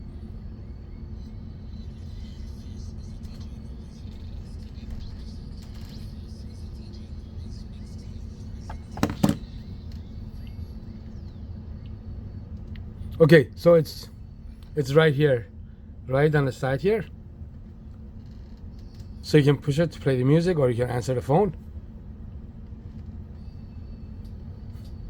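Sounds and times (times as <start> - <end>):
faint hip hop music: 0.0 - 15.4.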